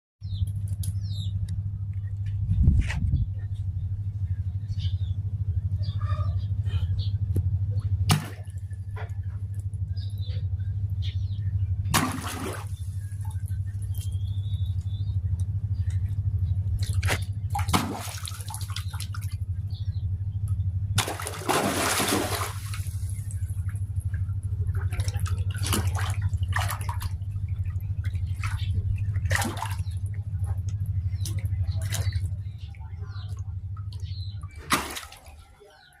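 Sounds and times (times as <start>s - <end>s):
steady low hum: 0.2s - 36.0s
water splashing and sloshing: 8.0s - 9.7s, 11.9s - 14.4s, 15.8s - 19.6s, 20.9s - 35.7s.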